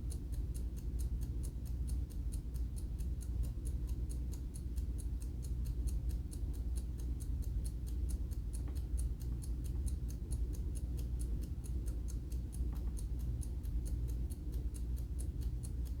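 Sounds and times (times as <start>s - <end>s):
alarm clock ticking: 0.0s - 16.0s
low steady hum: 0.0s - 16.0s.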